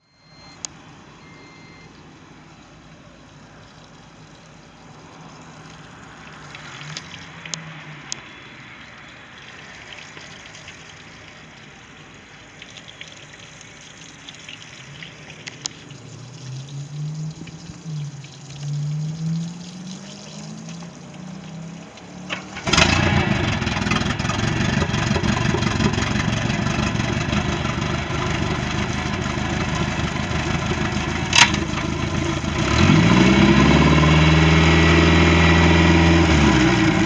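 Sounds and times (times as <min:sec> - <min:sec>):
water gushing and splashing: 0:02.8 - 0:37.0
boat engine running: 0:18.8 - 0:37.0
sharp clicks: 0:31.2 - 0:31.9.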